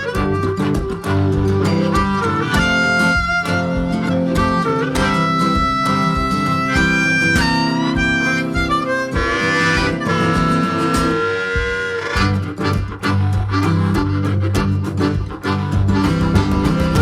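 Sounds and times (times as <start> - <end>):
harmonica: 0.0 - 17.0
steady beat: 0.0 - 17.0
strummed guitar: 0.0 - 17.0.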